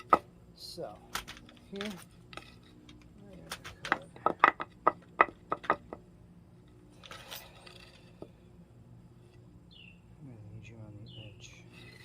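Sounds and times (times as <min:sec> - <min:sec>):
hard objects clicking and knocking: 0:00.0 - 0:00.3, 0:01.1 - 0:06.0
scraping rustle: 0:07.0 - 0:08.4, 0:11.6 - 0:12.0.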